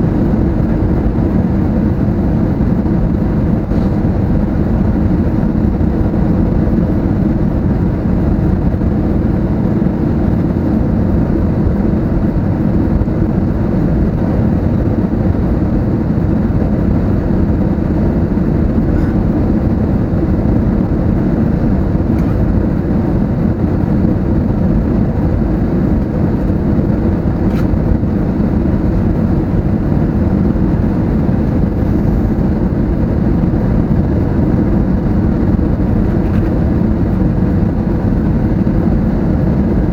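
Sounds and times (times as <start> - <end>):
airliner cabin rumble: 0.0 - 39.9.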